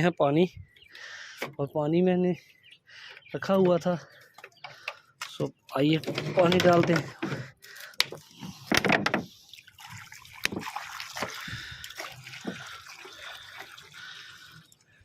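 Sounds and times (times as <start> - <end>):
water pouring into container: 9.3 - 15.0.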